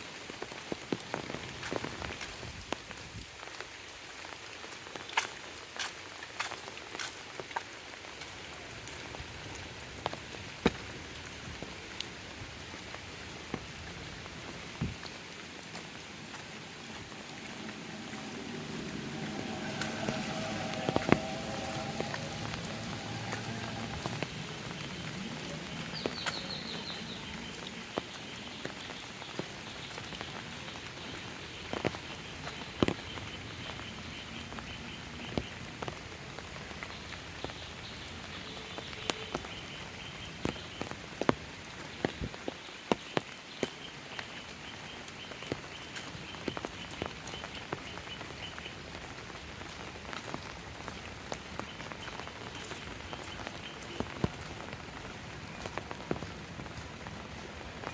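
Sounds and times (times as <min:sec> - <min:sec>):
steady rain falling: 0:00.0 - 0:57.9
low hum: 0:16.2 - 0:26.1.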